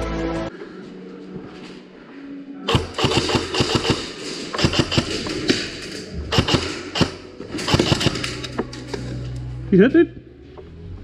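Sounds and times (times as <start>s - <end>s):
airsoft guns firing: 2.7s - 8.4s.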